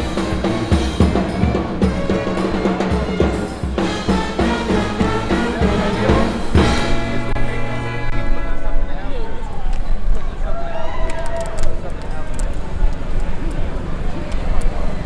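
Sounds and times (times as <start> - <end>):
bass drum and snare: 0.0 - 7.6
sustained pitched instruments: 0.0 - 9.6.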